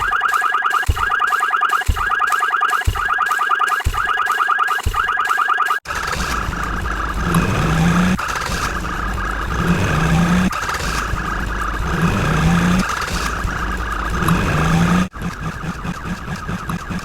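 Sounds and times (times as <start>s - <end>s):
looped motor-like buzzing noise: 5.9s - 17.0s.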